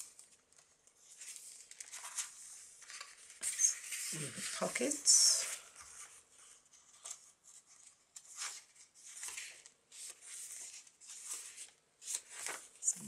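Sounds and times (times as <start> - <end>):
paper pages rustling: 0.0 - 13.0.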